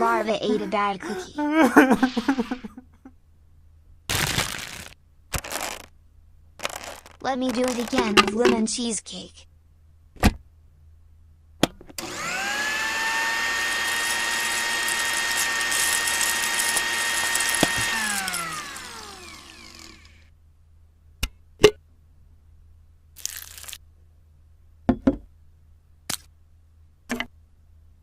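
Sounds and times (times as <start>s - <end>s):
small electric motor whining: 12.0s - 20.3s.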